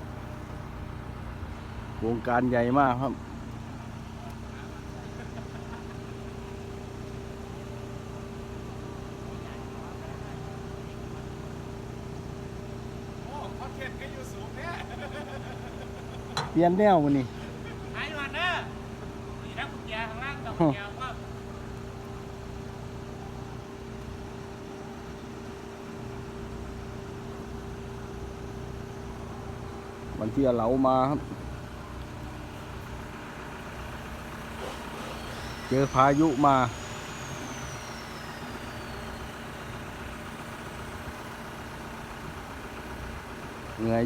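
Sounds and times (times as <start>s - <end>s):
heavy vehicle engine droning: 0.0s - 44.0s.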